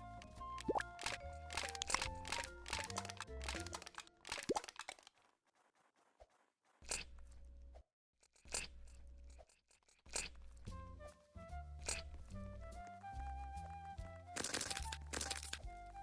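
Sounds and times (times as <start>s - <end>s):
crackles: 0.6s - 7.8s, 14.3s - 15.8s.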